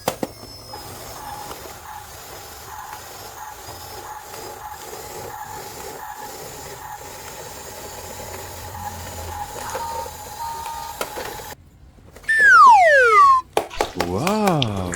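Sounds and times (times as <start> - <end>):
battery-powered toy whining: 0.0 - 11.6, 12.3 - 13.4
hissing regular pulsing: 0.8 - 11.6.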